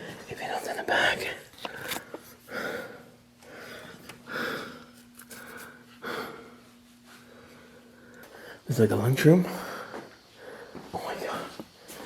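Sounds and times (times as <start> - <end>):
faint steady hum: 0.0 - 12.0
person breathing: 2.4 - 8.7, 9.4 - 12.0.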